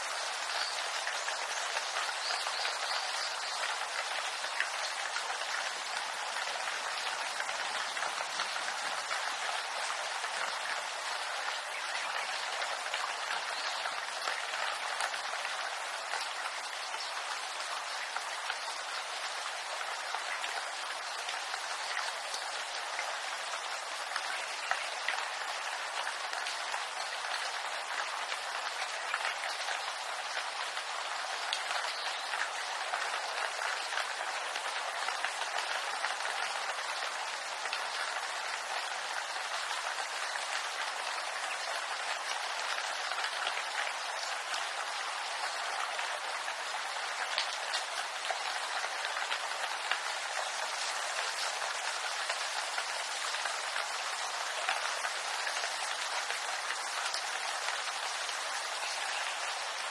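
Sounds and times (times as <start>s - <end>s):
rain on bamboo leaves: 0.0s - 59.9s.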